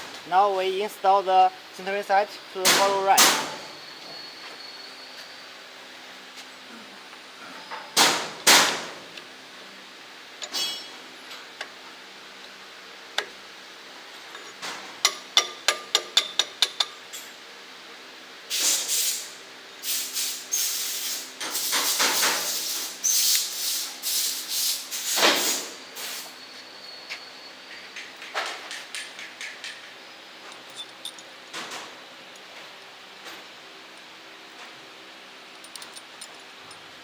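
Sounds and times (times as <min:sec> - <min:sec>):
metal parts scraping and rubbing: 0:21.6 - 0:26.2.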